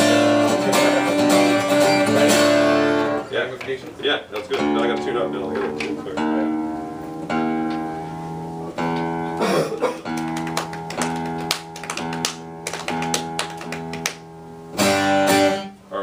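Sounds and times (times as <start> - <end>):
guitar strings plucked: 4.3 - 9.4.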